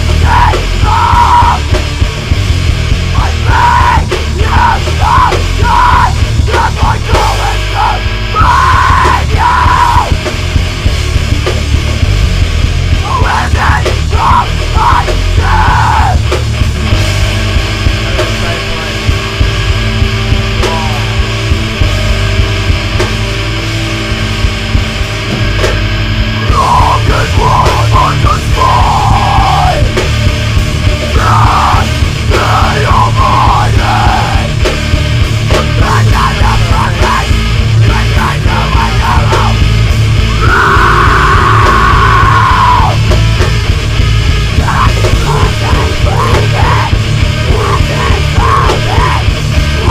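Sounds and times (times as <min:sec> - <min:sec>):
metalcore band playing: 0:00.0 - 0:49.9.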